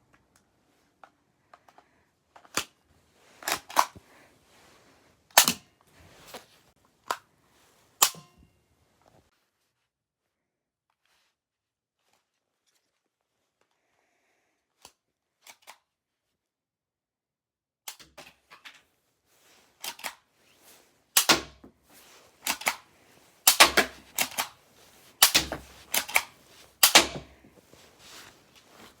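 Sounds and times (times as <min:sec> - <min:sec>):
toy pistol plastic clicks and snaps: 0:02.4 - 0:02.8, 0:03.4 - 0:04.0, 0:05.4 - 0:05.6, 0:08.0 - 0:08.3, 0:14.8 - 0:15.8, 0:17.9 - 0:18.4, 0:19.8 - 0:20.2, 0:21.2 - 0:21.6, 0:22.4 - 0:22.8, 0:23.5 - 0:24.6, 0:25.2 - 0:27.3.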